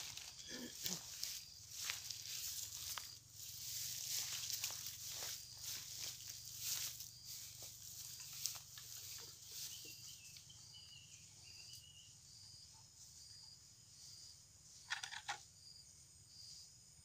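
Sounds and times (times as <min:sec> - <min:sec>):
insect chirping: 0:00.0 - 0:17.0
rattle of clicks: 0:14.8 - 0:15.4.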